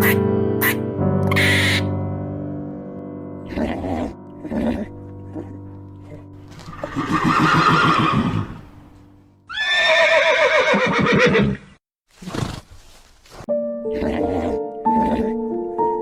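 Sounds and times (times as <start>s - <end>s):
horse whinnying: 3.5s - 5.5s, 6.6s - 8.7s, 9.5s - 12.6s.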